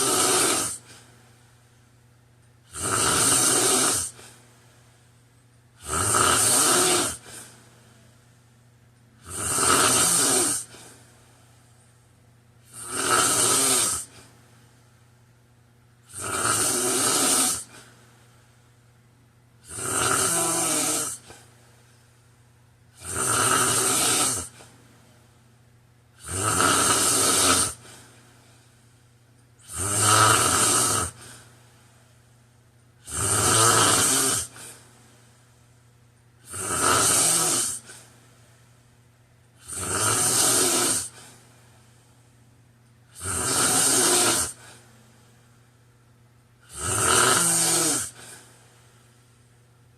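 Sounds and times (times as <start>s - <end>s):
man snoring: 0.0s - 0.9s, 2.7s - 4.2s, 5.8s - 7.5s, 9.2s - 10.9s, 12.6s - 14.2s, 16.1s - 17.8s, 19.6s - 21.4s, 23.0s - 24.7s, 26.2s - 28.0s, 29.6s - 31.4s, 33.0s - 34.8s, 36.4s - 38.0s, 39.6s - 41.2s, 43.1s - 44.7s, 46.7s - 48.5s.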